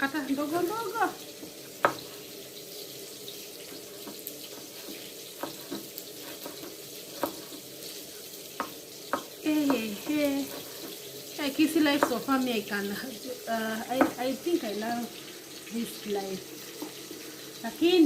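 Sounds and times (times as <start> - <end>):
knife tapping on board: 4.0 - 7.5, 8.6 - 9.9, 12.0 - 12.2, 13.9 - 14.2.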